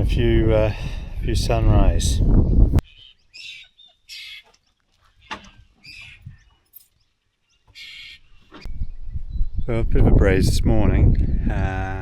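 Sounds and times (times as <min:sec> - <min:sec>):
birds calling: 0:02.8 - 0:09.7.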